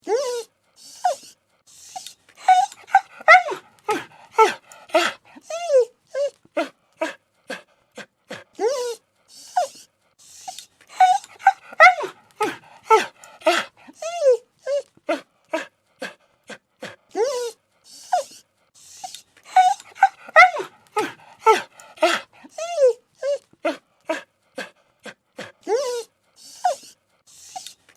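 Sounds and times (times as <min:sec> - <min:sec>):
dog whining and whimpering: 0:00.0 - 0:01.3, 0:01.9 - 0:07.1, 0:08.6 - 0:09.8, 0:10.4 - 0:15.6, 0:17.2 - 0:18.4, 0:19.0 - 0:24.2, 0:25.6 - 0:26.9
dog breathy huffs: 0:00.8 - 0:05.6, 0:06.6 - 0:14.2, 0:15.1 - 0:22.8, 0:23.7 - 0:27.9.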